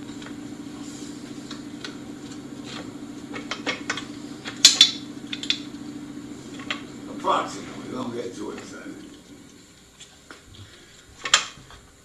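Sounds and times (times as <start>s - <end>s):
steady low hum: 0.0s - 11.4s
sharp clacks: 3.4s - 5.7s.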